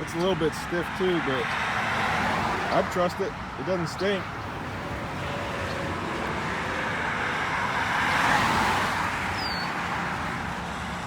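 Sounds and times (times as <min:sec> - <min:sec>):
vehicle passing: 0:04.3 - 0:11.0.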